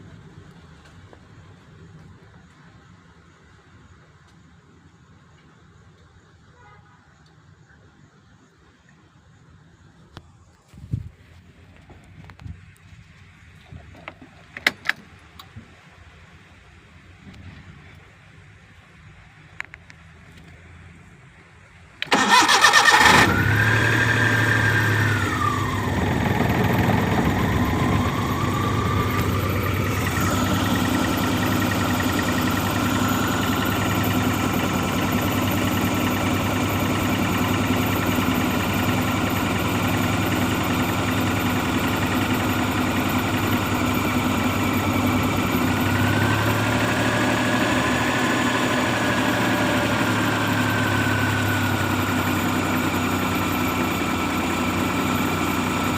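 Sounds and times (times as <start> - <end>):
car engine idling: 22.0 - 55.9.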